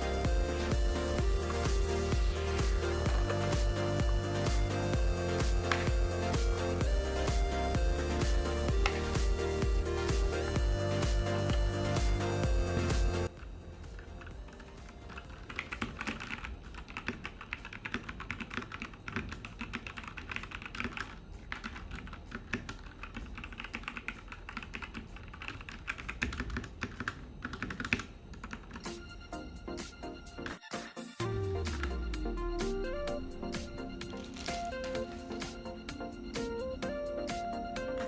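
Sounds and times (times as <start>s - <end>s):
faint music: 0.0s - 38.0s
mechanical keyboard typing: 5.6s - 6.8s, 8.8s - 9.2s, 13.2s - 29.0s.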